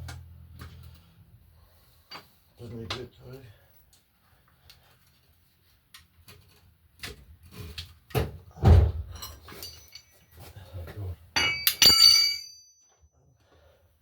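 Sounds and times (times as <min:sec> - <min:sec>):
metal parts clattering: 0:09.1 - 0:10.2, 0:11.4 - 0:12.7
ringing metallic clang: 0:11.4 - 0:13.0.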